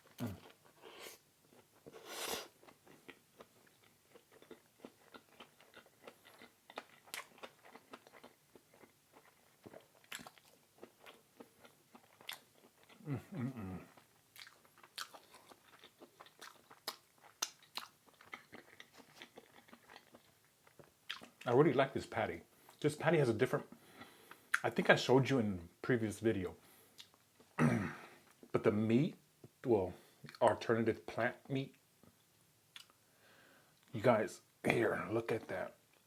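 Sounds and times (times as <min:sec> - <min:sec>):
person chewing and biting food: 0:00.0 - 0:21.4
wet mouth clicks and crunches: 0:04.1 - 0:10.6, 0:14.4 - 0:21.3.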